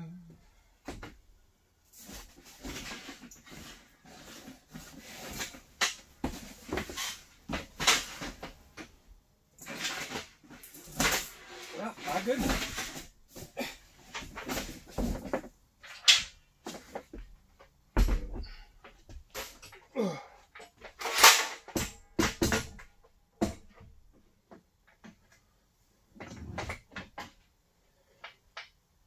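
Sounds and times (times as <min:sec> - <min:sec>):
metal parts knocking and clattering: 0:20.5 - 0:23.9.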